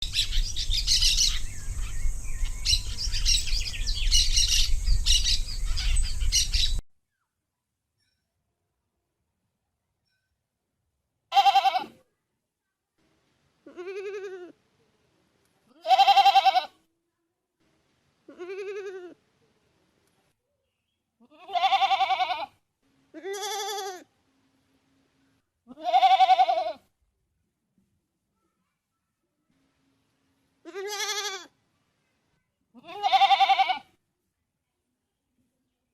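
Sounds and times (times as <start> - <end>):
birds chirping: 0.0 - 6.8
goat bleating: 11.3 - 12.0, 13.7 - 14.5, 15.8 - 16.7, 18.3 - 19.2, 21.2 - 22.5, 23.2 - 24.0, 25.7 - 26.8, 30.6 - 31.5, 32.8 - 33.9.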